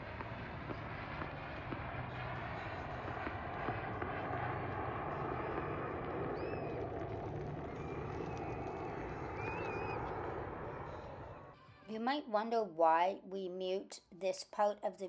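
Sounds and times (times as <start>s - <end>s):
airplane engine drone: 0.0s - 11.6s.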